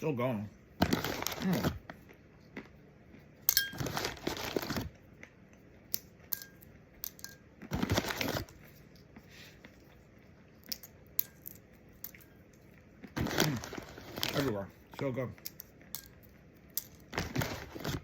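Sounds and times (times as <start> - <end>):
crunching and rustling: 3.7 - 5.0, 7.6 - 9.9, 12.1 - 15.4, 16.8 - 18.0
pistachio shells cracking: 5.9 - 7.4.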